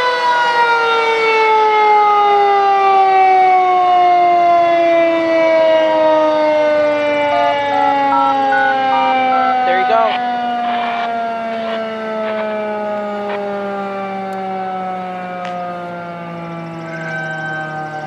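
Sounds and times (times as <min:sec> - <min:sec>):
warning siren winding down: 0:00.0 - 0:18.0
faint stepped tones: 0:07.2 - 0:12.5.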